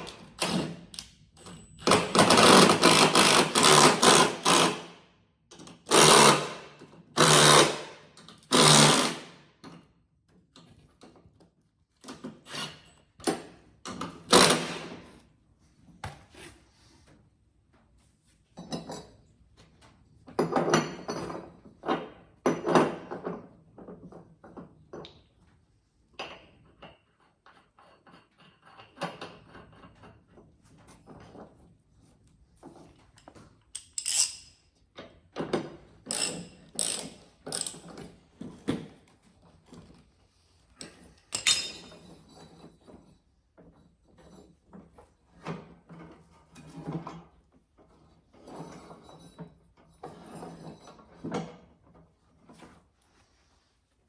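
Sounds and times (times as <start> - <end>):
metal parts clicking and clanking: 33.0 - 38.6, 40.8 - 43.0.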